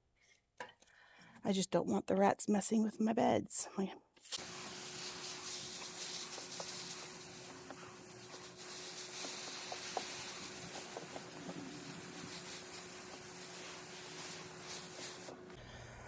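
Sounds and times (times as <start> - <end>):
garden mesh rustling: 4.4 - 15.6.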